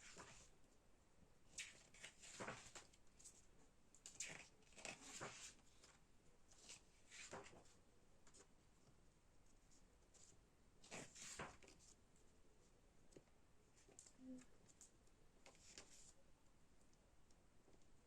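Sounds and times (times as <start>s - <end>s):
pages turning: 0.0s - 0.5s, 1.5s - 3.4s, 4.0s - 7.7s, 10.2s - 12.0s, 15.5s - 16.1s.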